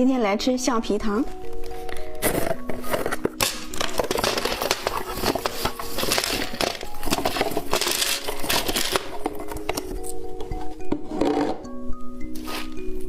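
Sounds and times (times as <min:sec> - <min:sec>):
plastic packaging crinkling: 0:01.5 - 0:10.2.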